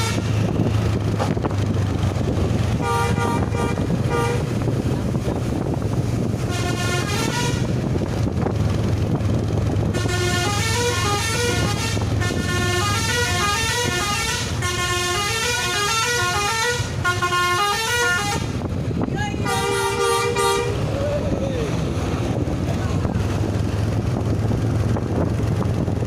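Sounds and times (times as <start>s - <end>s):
multi-tone bus horn tune: 0.0s - 0.8s, 2.7s - 4.8s, 6.2s - 8.0s, 9.8s - 21.0s
low engine rumble: 0.0s - 26.0s.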